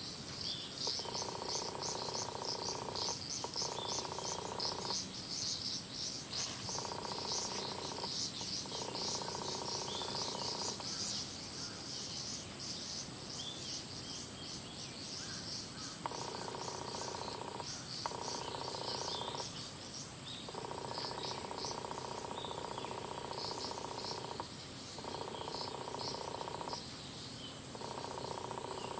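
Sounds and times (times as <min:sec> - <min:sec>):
cicadas shrilling: 0:00.0 - 0:28.9.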